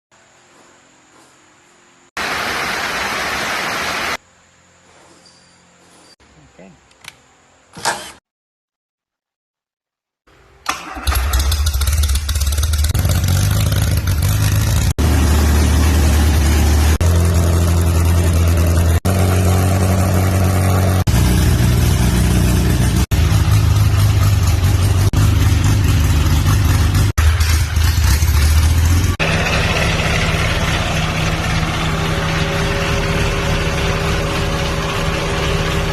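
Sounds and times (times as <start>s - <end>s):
car engine starting and idling: 10.6s - 35.9s.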